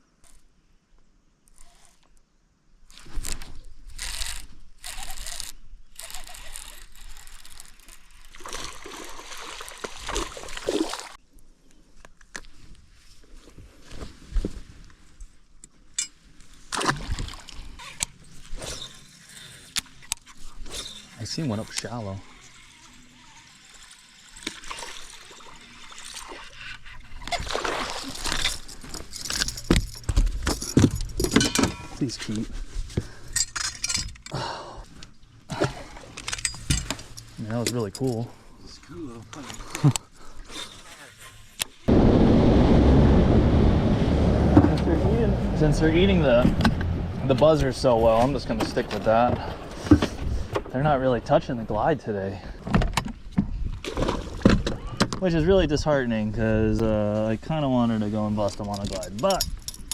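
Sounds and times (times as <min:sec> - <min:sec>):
ratchet-like mechanical clicking: 0:04.0 - 0:07.9
water splashing and gurgling: 0:07.3 - 0:11.2, 0:23.9 - 0:28.8.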